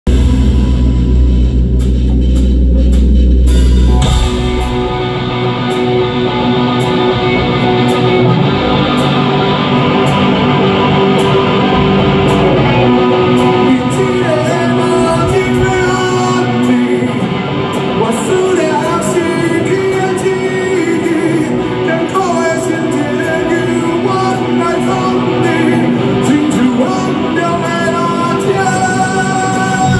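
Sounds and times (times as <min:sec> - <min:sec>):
deep low rumble: 0:00.0 - 0:07.4
rock band with guitars: 0:00.0 - 0:29.9.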